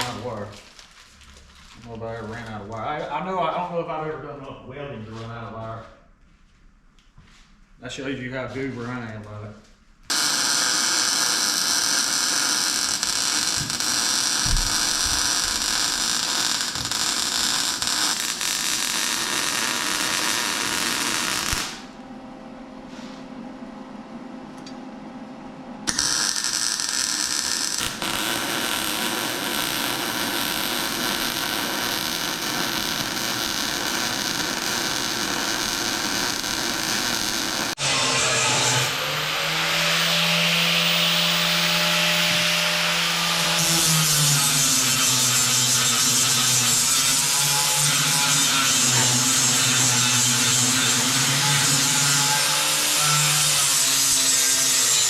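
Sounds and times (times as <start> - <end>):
harsh metalworking noise on steel: 10.1 - 21.8, 25.9 - 55.0.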